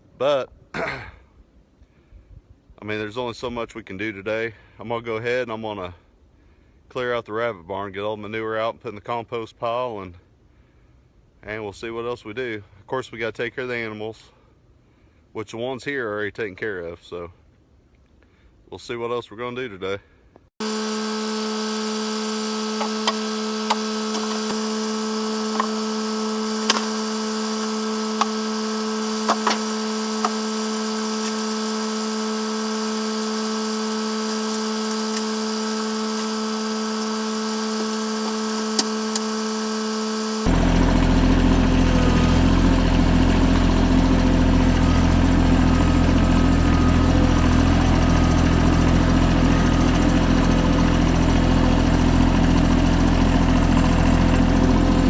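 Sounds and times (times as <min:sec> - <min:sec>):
engine idling: 0:20.6 - 0:55.0
machine hum: 0:20.6 - 0:55.0.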